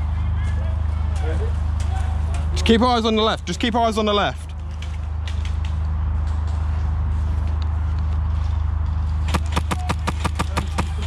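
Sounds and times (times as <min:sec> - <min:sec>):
low mechanical hum: 0:00.0 - 0:11.0
airsoft gunfire snaps: 0:09.3 - 0:11.0.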